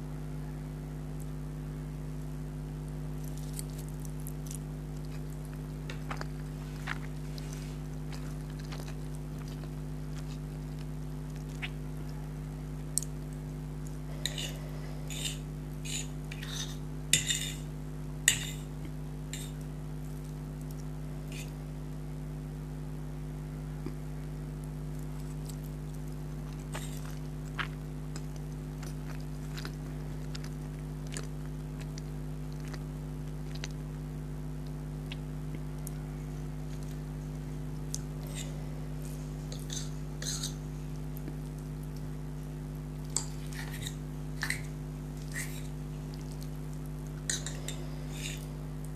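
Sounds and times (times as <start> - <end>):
steady low hum: 0.0 - 48.9
person chewing: 3.2 - 17.6, 24.9 - 33.8, 34.6 - 36.0, 36.6 - 42.1, 43.0 - 48.9.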